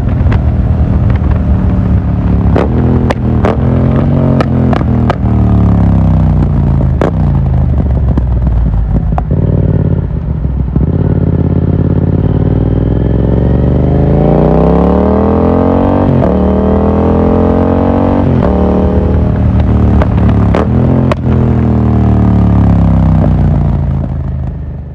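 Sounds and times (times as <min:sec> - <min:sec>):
motorcycle engine revving: 0:00.0 - 0:24.9
exhaust cracks: 0:18.2 - 0:21.4.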